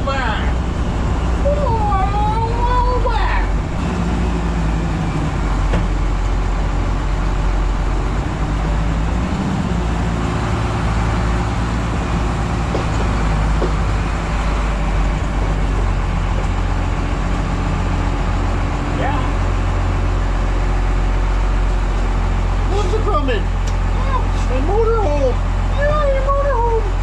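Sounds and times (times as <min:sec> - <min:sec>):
road noise: 0:00.0 - 0:27.0
vehicle engine drone: 0:00.0 - 0:27.0.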